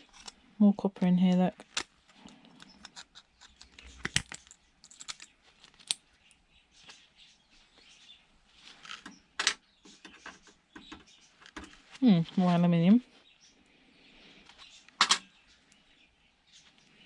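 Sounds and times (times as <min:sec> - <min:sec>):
hand tools clicking and scraping: 0:01.6 - 0:06.0.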